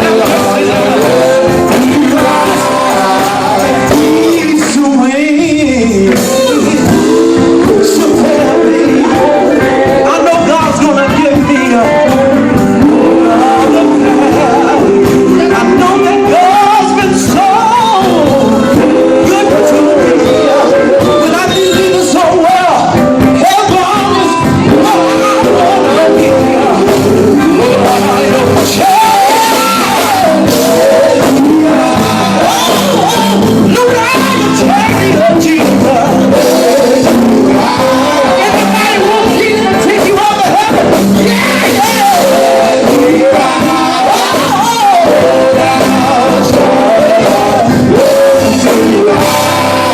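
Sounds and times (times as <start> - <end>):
gospel group singing with band: 0.0 - 49.9.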